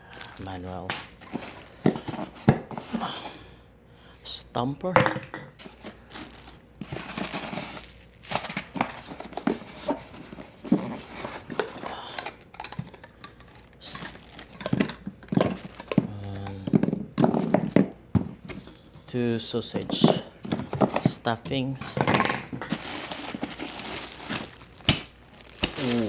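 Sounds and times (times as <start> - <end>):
plastic packaging crinkling and tearing: 0.0 - 3.0, 5.6 - 16.8, 21.8 - 26.0.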